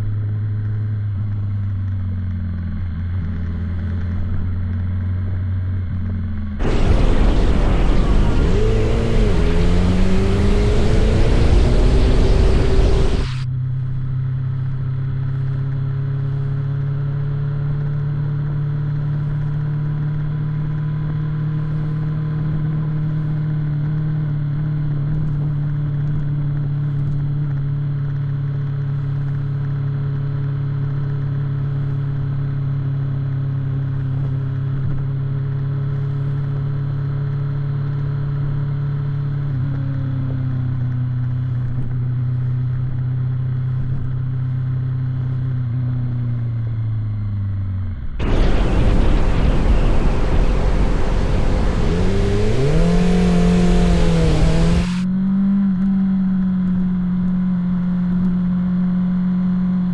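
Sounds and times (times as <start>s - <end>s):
motorcycle engine cruising: 0.0s - 32.0s, 33.2s - 59.8s.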